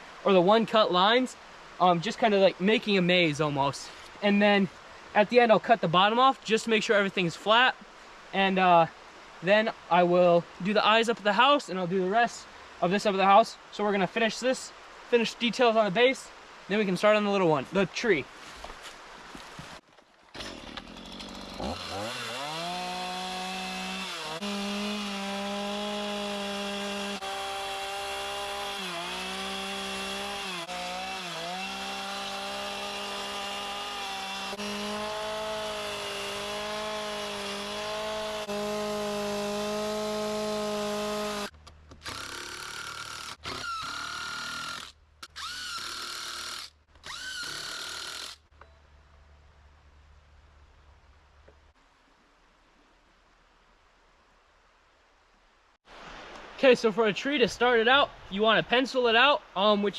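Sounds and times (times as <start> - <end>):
chainsaw cutting wood: 20.2 - 48.4.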